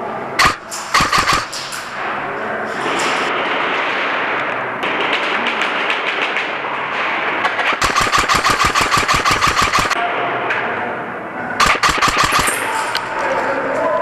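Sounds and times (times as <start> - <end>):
airsoft gun full-auto burst: 0.4 - 1.6, 7.5 - 10.0, 11.6 - 12.7
faint scattered airsoft shots: 0.4 - 2.0, 3.2 - 10.0, 11.6 - 12.9.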